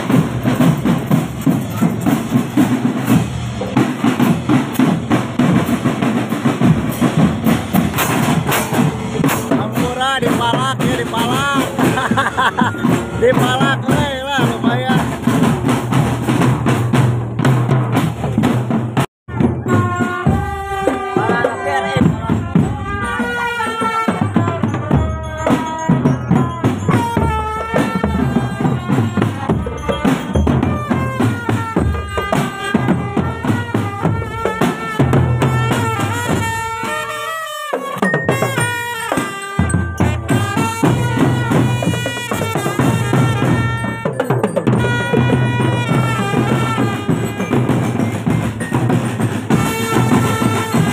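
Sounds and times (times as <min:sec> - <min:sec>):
bass drum: 0:00.0 - 0:36.9, 0:38.0 - 0:50.9
marching drum band: 0:00.0 - 0:50.9.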